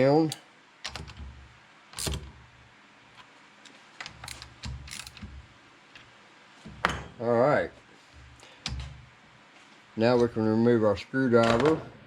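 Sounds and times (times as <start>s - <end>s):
wrench metallic clicks: 2.0s - 2.3s, 4.0s - 5.4s.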